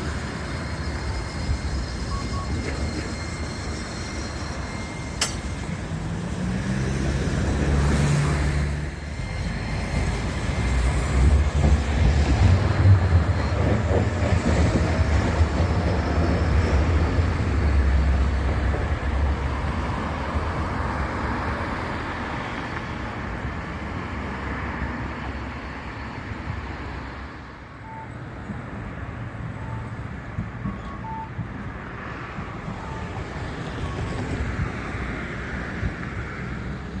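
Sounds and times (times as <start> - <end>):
passing vehicles rumbling: 4.7 - 15.8.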